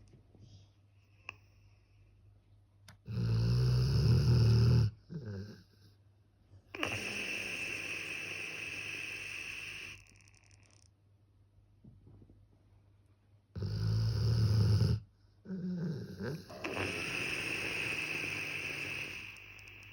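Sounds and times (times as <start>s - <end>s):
puppy snoring: 3.0s - 5.9s, 6.8s - 10.8s, 13.6s - 19.9s
hissing breath: 6.8s - 10.0s, 16.5s - 19.9s.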